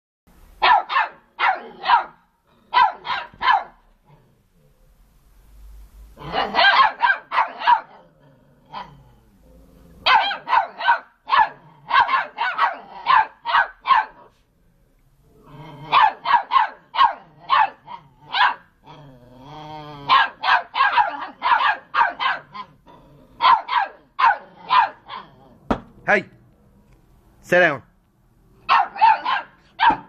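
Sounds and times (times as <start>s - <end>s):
dog barking: 0.6s - 3.8s, 6.2s - 8.0s, 10.0s - 14.3s, 15.9s - 18.7s, 20.1s - 22.7s, 23.4s - 25.3s, 28.7s - 30.0s.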